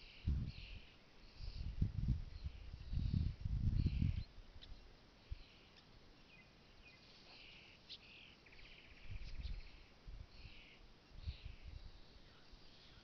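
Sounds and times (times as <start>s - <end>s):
wind gusts on microphone: 0.0s - 4.5s, 8.9s - 12.0s
small birds chirping: 0.0s - 13.0s.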